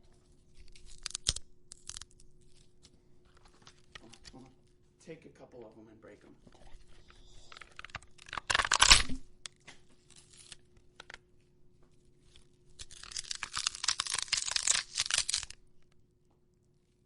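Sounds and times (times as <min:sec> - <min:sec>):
crisp object crackling and tearing: 0:00.2 - 0:04.6, 0:06.6 - 0:11.2, 0:12.0 - 0:16.0.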